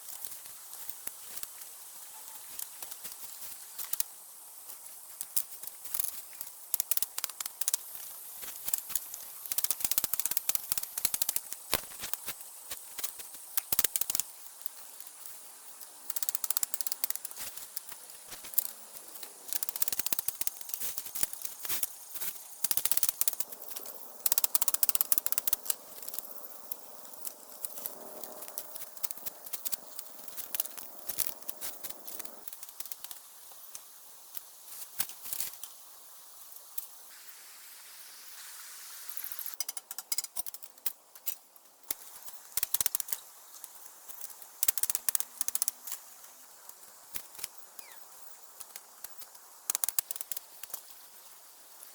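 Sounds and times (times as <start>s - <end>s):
bamboo cracking and clicking: 5.2s - 33.8s, 39.5s - 46.1s, 48.6s - 50.9s.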